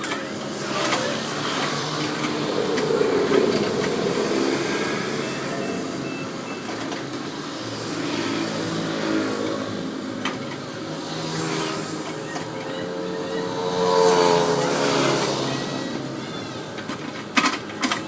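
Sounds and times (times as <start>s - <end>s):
heavy diesel engine revving: 0.4s - 9.8s.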